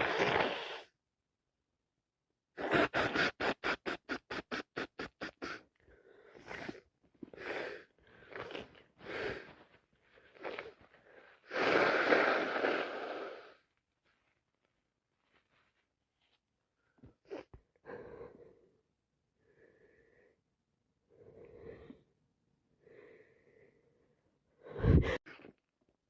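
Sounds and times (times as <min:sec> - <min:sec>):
person blowing nose: 0:00.0 - 0:00.9, 0:02.6 - 0:05.7, 0:06.3 - 0:09.6, 0:10.3 - 0:13.7.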